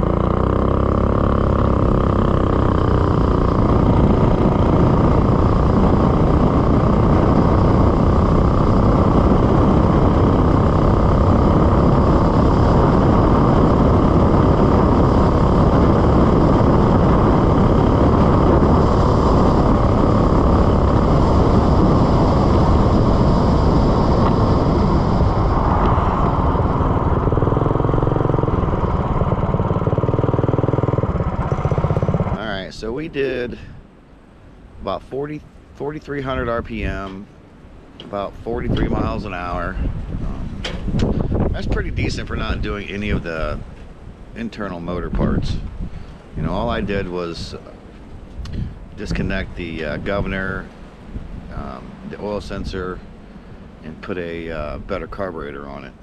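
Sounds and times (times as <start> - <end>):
small engine running hard: 0.0 - 33.1, 38.1 - 56.0.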